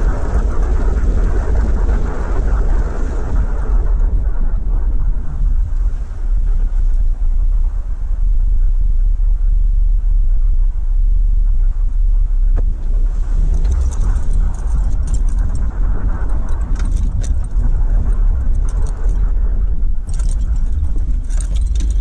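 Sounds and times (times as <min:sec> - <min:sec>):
car road and engine rumble: 0:00.0 - 0:22.0
light rattling clicks: 0:13.4 - 0:22.0.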